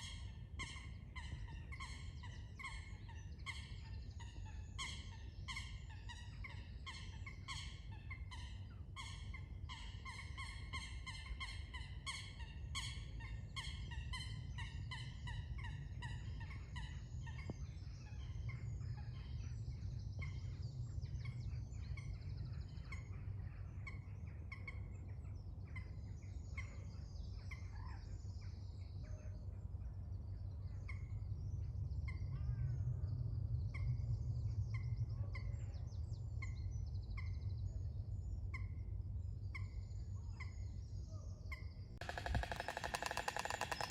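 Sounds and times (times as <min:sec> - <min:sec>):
small birds chirping: 0:39.4 - 0:43.9
storks bill-clattering: 0:42.0 - 0:43.9.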